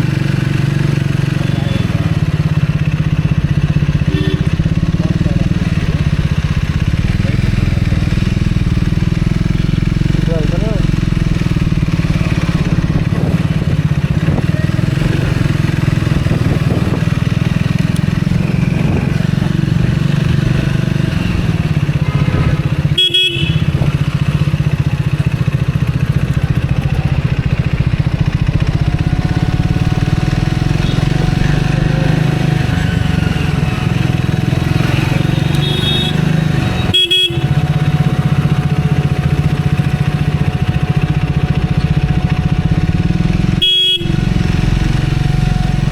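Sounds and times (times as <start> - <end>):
motorcycle engine running: 0.0 - 45.9
road traffic: 0.0 - 45.9
vehicle horns honking: 1.2 - 2.7, 3.9 - 5.0, 18.4 - 24.8, 28.8 - 40.0, 43.5 - 44.5.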